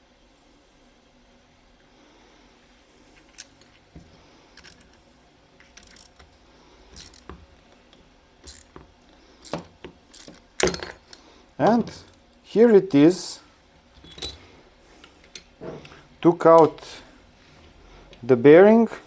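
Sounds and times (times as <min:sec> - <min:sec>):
small metal parts clinking: 0:03.2 - 0:03.8, 0:04.6 - 0:05.0, 0:05.6 - 0:06.2, 0:06.9 - 0:07.4, 0:08.4 - 0:08.8, 0:09.4 - 0:11.2, 0:14.0 - 0:14.6.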